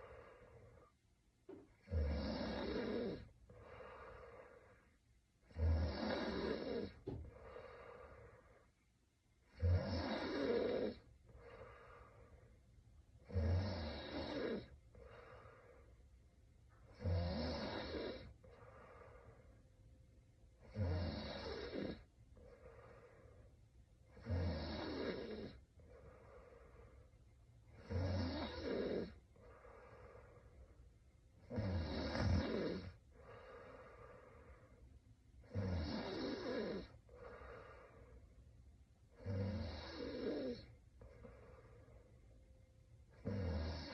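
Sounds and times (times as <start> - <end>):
woman snoring: 1.5 - 8.7, 9.5 - 12.4, 13.2 - 15.9, 16.9 - 19.4, 20.6 - 23.5, 24.1 - 27.0, 27.7 - 30.7, 31.4 - 34.8, 35.4 - 38.3, 39.1 - 42.0, 43.1 - 43.9.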